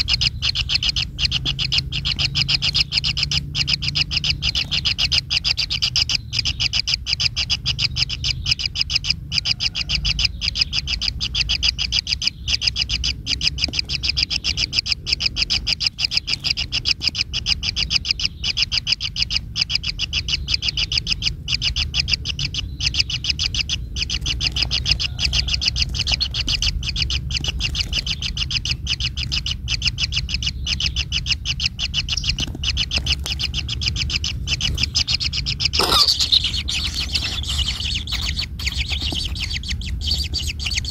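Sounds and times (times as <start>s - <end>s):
low steady hum: 0.0s - 40.9s
bird calling high notes: 28.0s - 40.9s.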